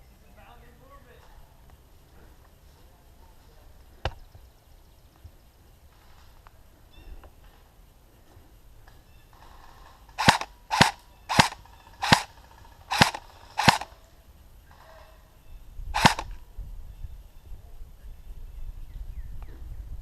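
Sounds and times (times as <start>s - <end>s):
airsoft rifle shots: 9.3s - 14.0s, 16.0s - 16.4s.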